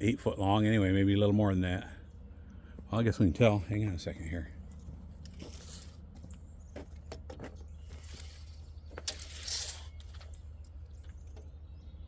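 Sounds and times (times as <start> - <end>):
tape measure clicking and scraping: 8.0 - 10.4.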